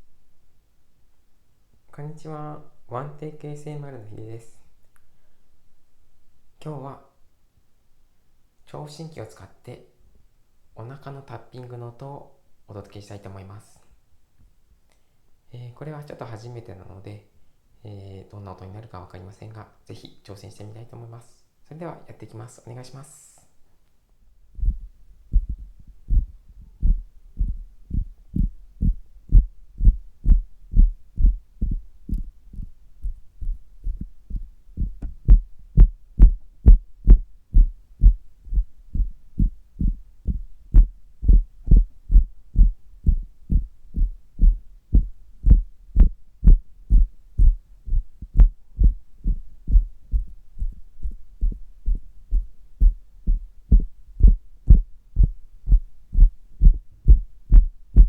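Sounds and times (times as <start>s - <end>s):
fingers tapping on belly: 24.6s - 58.0s.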